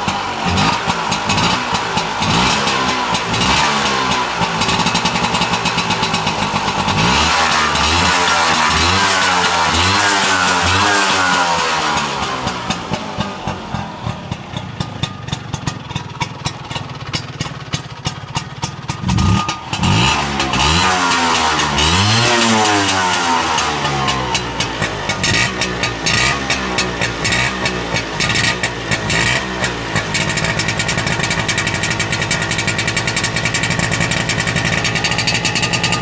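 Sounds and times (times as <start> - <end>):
scooter engine revving and idling: 0.0 - 36.0.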